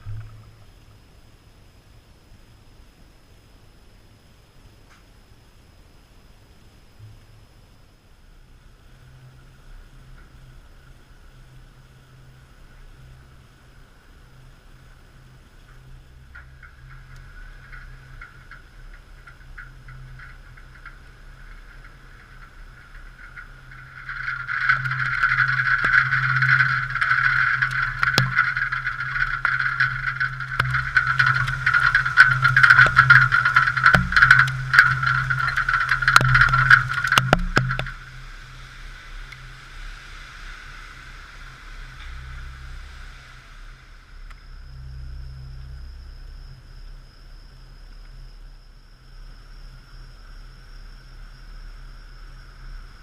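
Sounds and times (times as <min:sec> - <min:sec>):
muffled wind: 0:00.0 - 0:53.0
rain: 0:00.0 - 0:53.0
sharp ticks: 0:14.7 - 0:39.5.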